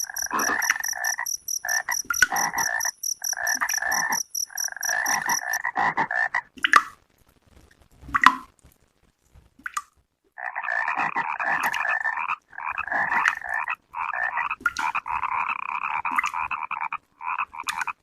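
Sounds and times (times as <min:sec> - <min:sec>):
high rhythmic chirping: 0:00.0 - 0:05.6
sharp single frog calls: 0:00.0 - 0:05.6
frogs croaking in chorus: 0:00.0 - 0:06.4, 0:10.4 - 0:18.0.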